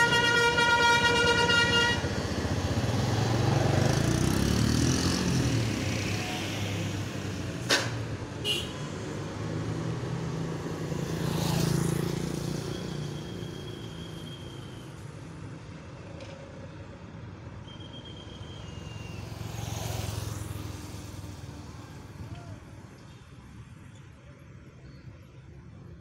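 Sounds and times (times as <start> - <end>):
vehicle passing: 2.0 - 7.6, 18.9 - 22.2.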